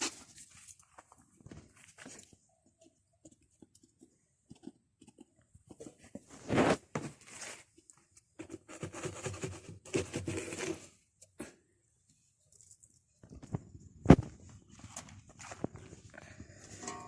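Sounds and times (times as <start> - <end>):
rustling and scraping handling: 0.0 - 17.0.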